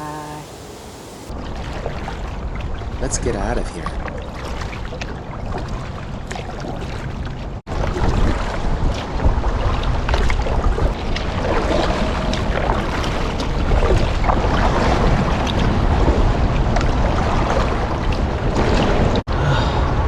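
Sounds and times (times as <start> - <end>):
paddle water splashing: 0.0 - 19.2
wind noise on microphone: 7.7 - 20.0.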